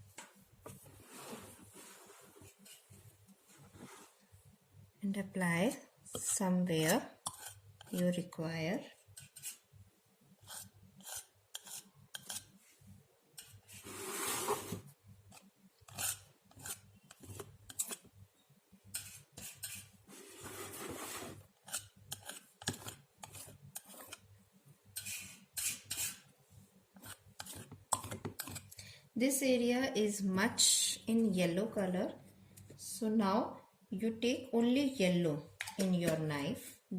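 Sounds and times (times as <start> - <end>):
palette knife scraping paint: 1.9 - 2.9, 6.1 - 8.3, 9.1 - 9.6, 10.4 - 12.6, 13.4 - 18.1, 18.9 - 24.3, 25.0 - 26.3, 27.0 - 28.7.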